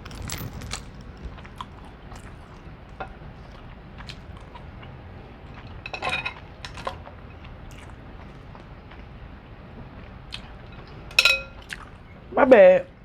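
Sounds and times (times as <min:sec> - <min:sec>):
dishes and utensils clinking: 0:05.4 - 0:07.9, 0:10.7 - 0:11.9.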